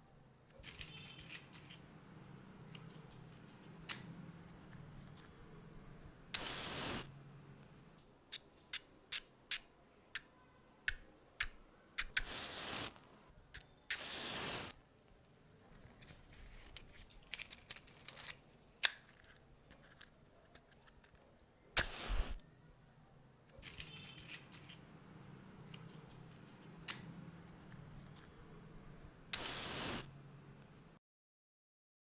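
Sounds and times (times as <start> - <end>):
matchbox handling clicks and taps: 0.5 - 5.5, 8.3 - 10.3, 10.9 - 14.7, 15.7 - 22.4, 23.4 - 30.7
match striking on matchbox: 0.5 - 7.6, 8.3 - 22.4, 23.6 - 30.9.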